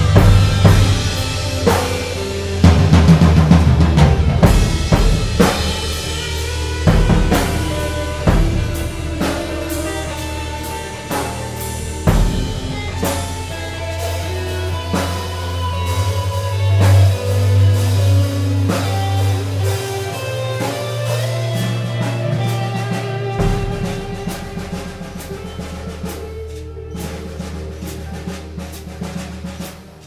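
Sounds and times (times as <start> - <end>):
drum kit strikes: 0.0 - 30.0
held instrumental tones: 0.0 - 30.0
low bass notes: 0.0 - 30.0.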